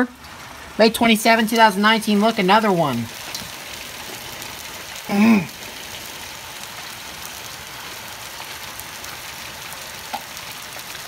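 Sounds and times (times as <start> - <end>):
hail falling: 0.0 - 11.0
man exclaiming: 5.1 - 5.6.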